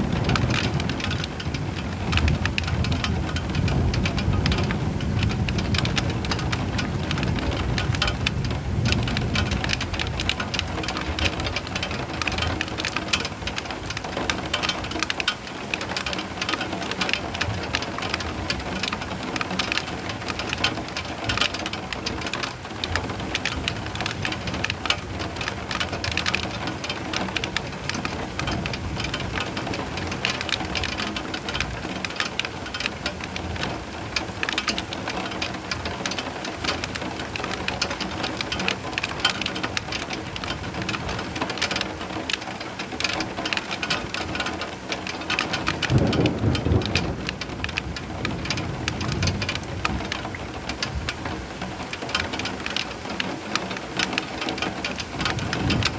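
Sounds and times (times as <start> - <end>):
low thunder rumble: 0.0 - 12.8, 45.6 - 51.6, 55.1 - 55.9
steady rain patter: 0.0 - 55.9.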